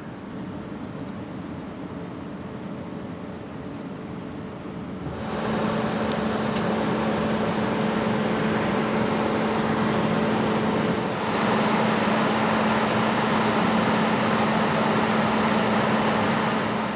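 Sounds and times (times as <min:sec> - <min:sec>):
road and wind noise: 0:00.0 - 0:16.9
car engine drone: 0:05.0 - 0:16.9.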